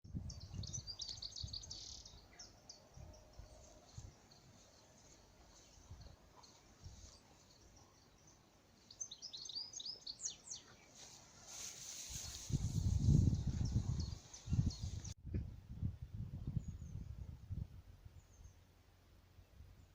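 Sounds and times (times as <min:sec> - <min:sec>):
bird chirping: 0:00.1 - 0:11.2, 0:12.2 - 0:15.2.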